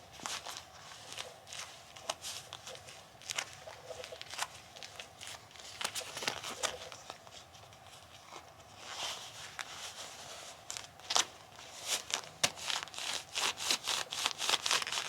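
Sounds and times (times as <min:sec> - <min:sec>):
rubber gloves snapping and crackling: 0:10.7 - 0:15.0.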